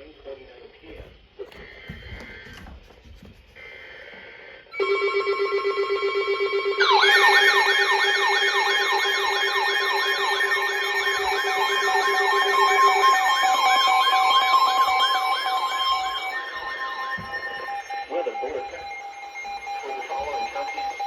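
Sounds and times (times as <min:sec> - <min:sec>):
high steady alarm tones: 0:06.2 - 0:21.0.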